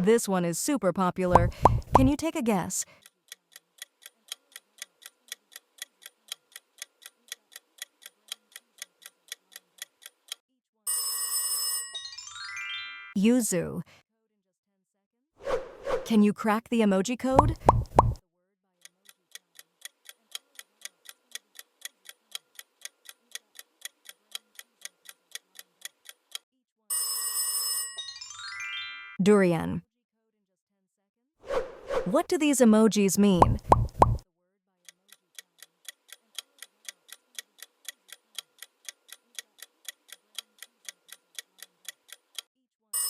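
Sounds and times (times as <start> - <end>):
clock ticking: 1.3 - 2.3, 3.0 - 10.4, 17.3 - 18.2, 18.8 - 26.4, 33.2 - 34.2, 34.9 - 42.5
countdown timer ticking: 1.3 - 2.3, 17.3 - 18.2, 33.2 - 34.2.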